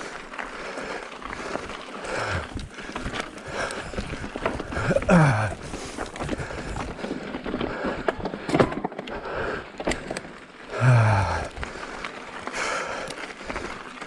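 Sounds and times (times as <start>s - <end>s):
bike tyres rolling on dirt: 0.0s - 14.0s
bike knocking and clattering: 1.3s - 10.4s.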